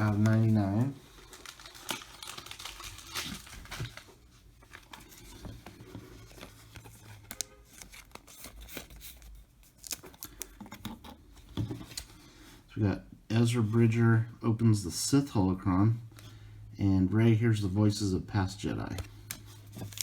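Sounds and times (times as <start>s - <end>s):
wrapper tearing and crinkling: 0.0s - 4.2s, 9.7s - 10.5s, 19.8s - 20.0s.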